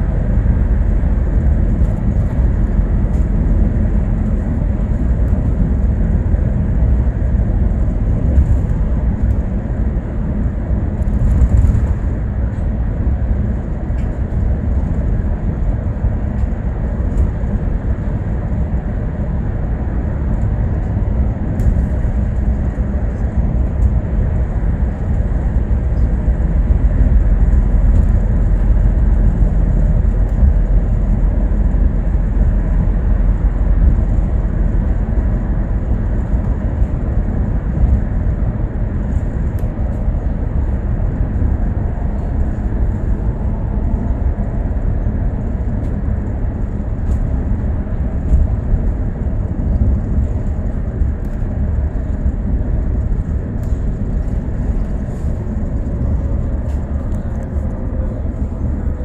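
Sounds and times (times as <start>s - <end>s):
bus engine and road rumble: 0.0s - 59.0s.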